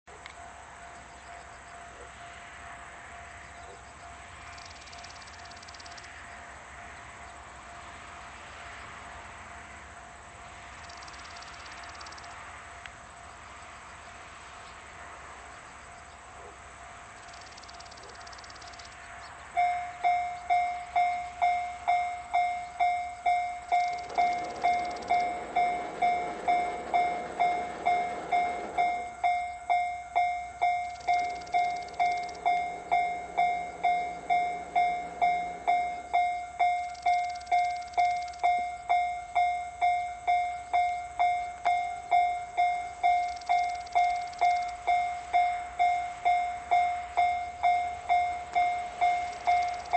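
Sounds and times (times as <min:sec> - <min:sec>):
rushing noise: 0:01.8 - 0:49.9
level crossing bell alarm: 0:16.6 - 0:49.9.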